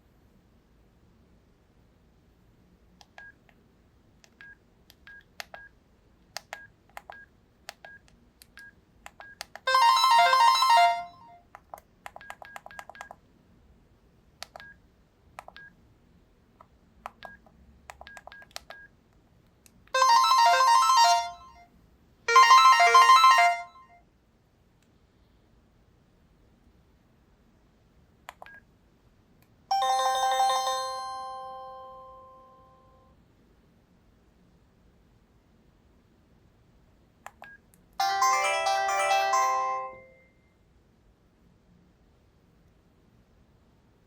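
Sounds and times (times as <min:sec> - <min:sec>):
faint keypad beeps: 0:03.0 - 0:03.4, 0:12.1 - 0:13.2, 0:17.2 - 0:18.9, 0:28.3 - 0:28.6
melodic ringtone previews: 0:09.7 - 0:11.3, 0:20.0 - 0:21.6, 0:22.3 - 0:23.8, 0:29.7 - 0:32.9, 0:38.0 - 0:40.2.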